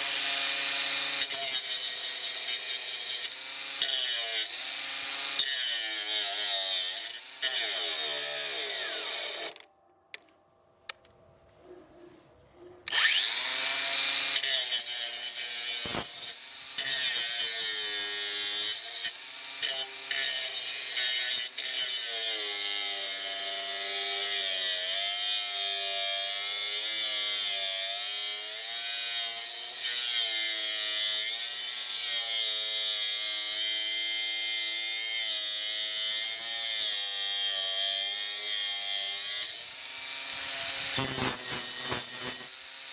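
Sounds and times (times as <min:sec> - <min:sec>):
angle grinder whining: 0:00.0 - 0:09.6, 0:12.9 - 0:24.4, 0:35.6 - 0:42.9.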